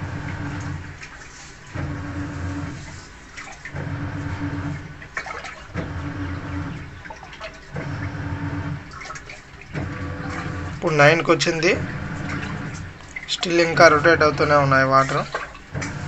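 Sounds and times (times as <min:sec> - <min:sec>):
washing machine motor humming: 0:00.0 - 0:16.0
water swishing: 0:00.0 - 0:16.0.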